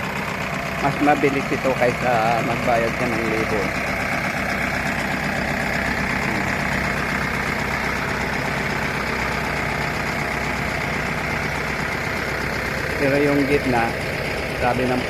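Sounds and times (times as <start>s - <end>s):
mini backhoe engine running: 0.0s - 15.0s.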